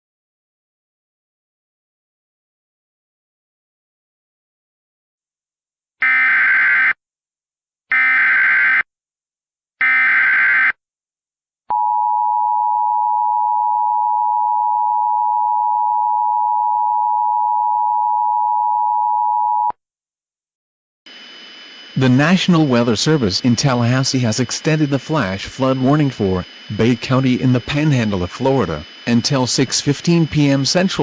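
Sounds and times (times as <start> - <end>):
steady electronic attention tone: 21.1 - 31.0.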